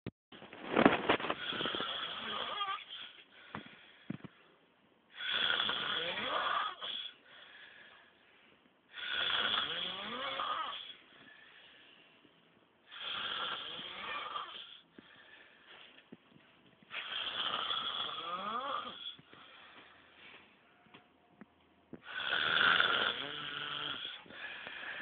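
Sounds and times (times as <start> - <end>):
man snoring heavily: 1.4 - 3.1, 5.1 - 7.2, 8.9 - 11.0, 12.9 - 14.8, 17.0 - 19.2, 22.0 - 24.3.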